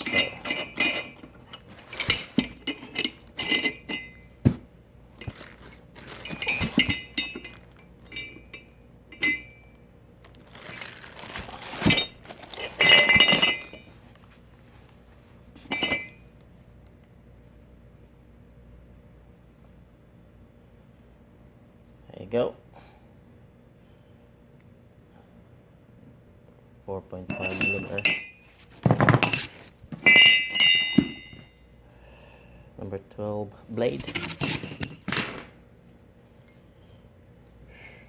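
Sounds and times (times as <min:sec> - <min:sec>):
metal parts clinking: 0:00.0 - 0:04.2, 0:05.2 - 0:09.5, 0:11.7 - 0:13.9, 0:27.3 - 0:31.4, 0:34.0 - 0:35.6.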